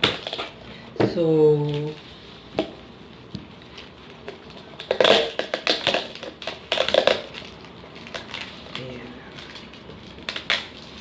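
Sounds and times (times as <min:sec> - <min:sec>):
plastic packaging crinkling: 0:03.1 - 0:11.0.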